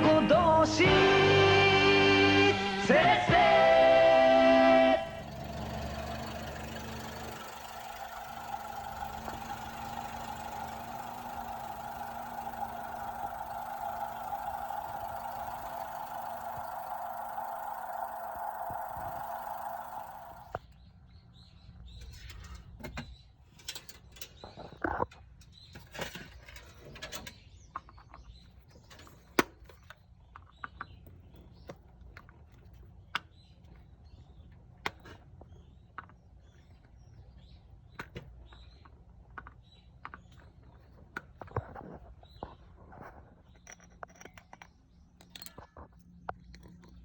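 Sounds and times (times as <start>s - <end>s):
faint low hum: 4.6s - 20.6s.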